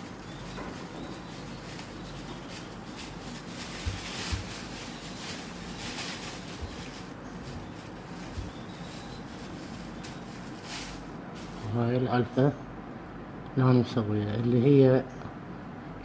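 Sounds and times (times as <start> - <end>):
low hum and hiss: 0.0 - 16.0.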